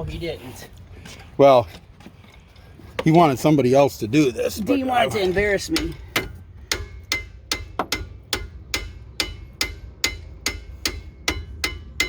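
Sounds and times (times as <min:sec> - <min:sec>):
hammer striking metal: 0:05.7 - 0:12.0.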